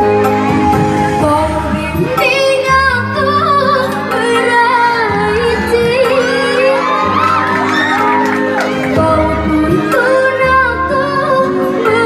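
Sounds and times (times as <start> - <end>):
music accompaniment: 0.0 - 12.0
child singing with vibrato: 1.2 - 8.1, 8.7 - 12.0.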